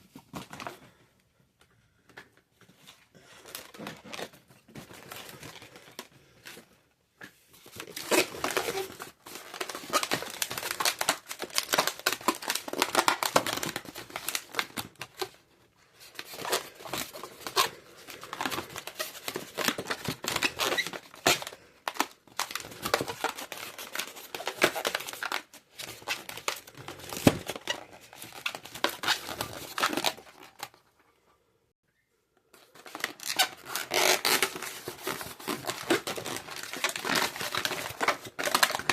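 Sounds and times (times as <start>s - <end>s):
rubber balloons squeaking: 33.2s - 34.7s.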